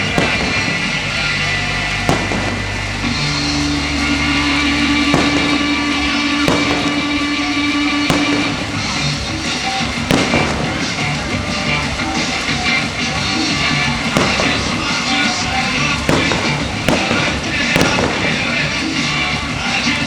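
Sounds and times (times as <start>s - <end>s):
fireworks bursting: 0.0s - 20.0s
music with long held notes: 0.0s - 20.0s.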